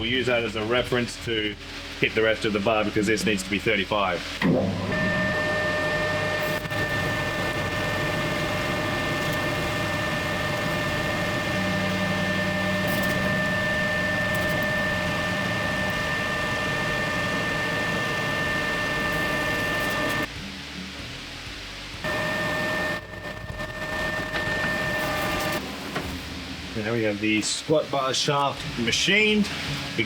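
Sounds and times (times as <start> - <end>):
metal lathe whining: 4.2 - 20.3, 22.0 - 26.9
hiss of metal cutting: 5.0 - 20.3.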